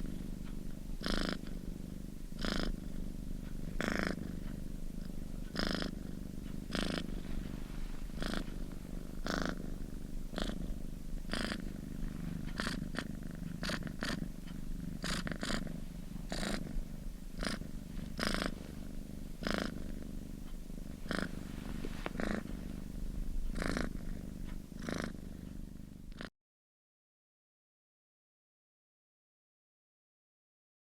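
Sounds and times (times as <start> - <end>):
kitten purring: 0.0 - 26.3.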